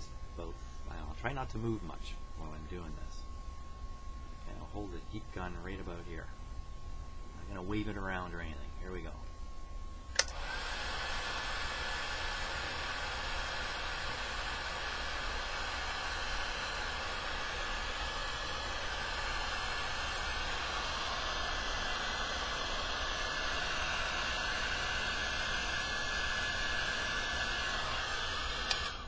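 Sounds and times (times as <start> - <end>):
heat gun switch click: 10.1 - 10.4, 28.6 - 29.0
heat gun blowing: 10.2 - 29.0.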